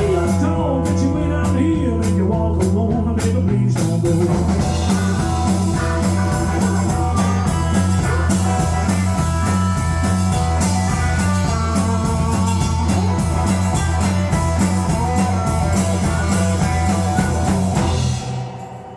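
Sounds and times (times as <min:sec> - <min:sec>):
bass riff: 0:00.0 - 0:18.9
drums with cymbals: 0:00.0 - 0:18.9
electric guitar lines: 0:04.2 - 0:18.9.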